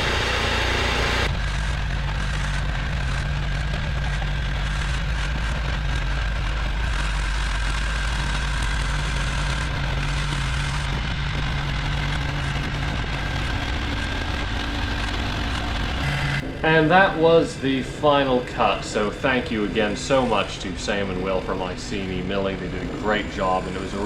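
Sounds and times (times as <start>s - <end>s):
chainsaw cutting log: 0.0s - 16.4s.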